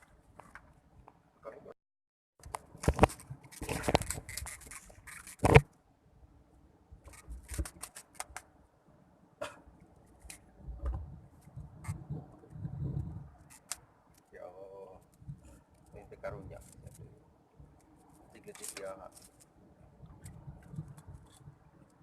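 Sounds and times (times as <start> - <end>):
rustling and scraping handling: 2.4 - 5.6, 7.0 - 8.4, 15.0 - 17.1, 17.8 - 21.6.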